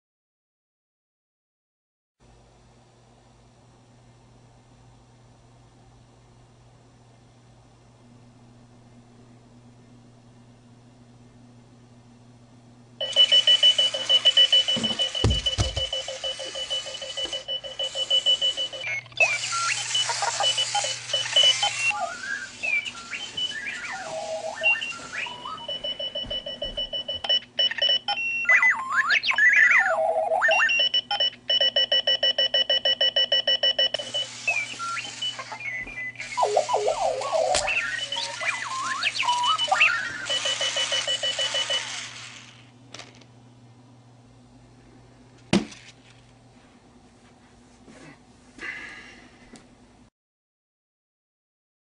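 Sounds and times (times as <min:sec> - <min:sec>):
alarm clock electronic beeps: 0:13.0 - 0:42.2.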